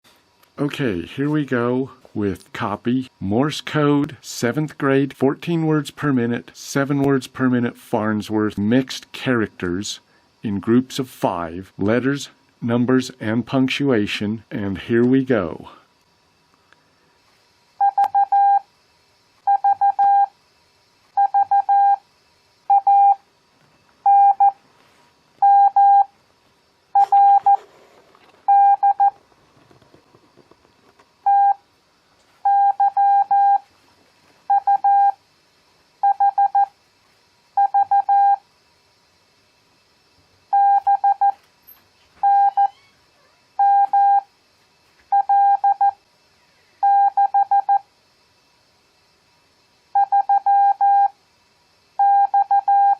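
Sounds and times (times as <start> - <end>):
morse code beeps: 17.8 - 18.6, 19.5 - 20.3, 21.2 - 22.0, 22.7 - 23.2, 24.0 - 24.6, 25.4 - 26.1, 27.0 - 27.6, 28.5 - 29.2, 31.3 - 31.6, 32.4 - 33.6, 34.5 - 35.2, 36.0 - 36.7, 37.6 - 38.4, 40.6 - 41.4, 42.2 - 42.7, 43.6 - 44.2, 45.1 - 46.0, 46.8 - 47.8, 50.0 - 51.1, 52.0 - 52.9.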